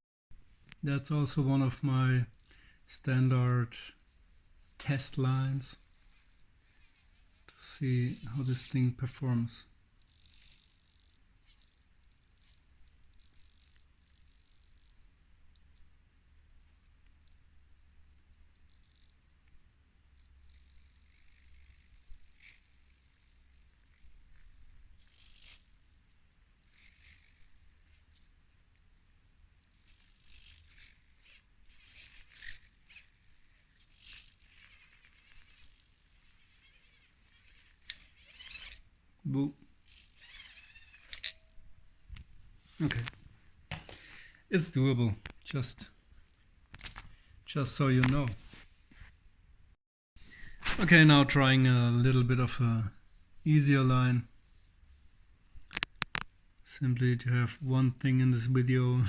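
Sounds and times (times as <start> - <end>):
small electric motor whining: 10.0 - 15.0, 20.2 - 26.0, 26.6 - 28.4, 29.6 - 41.7.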